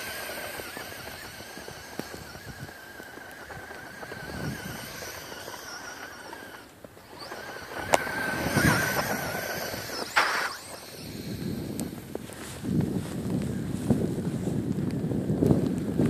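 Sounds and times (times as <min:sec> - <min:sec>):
toy car motor whining: 0:00.0 - 0:12.6.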